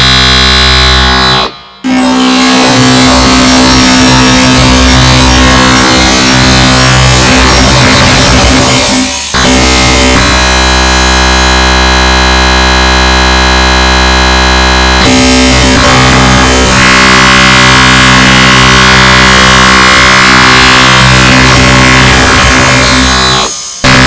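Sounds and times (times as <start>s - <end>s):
dense synthesized midi note clusters: 0.0s - 24.0s.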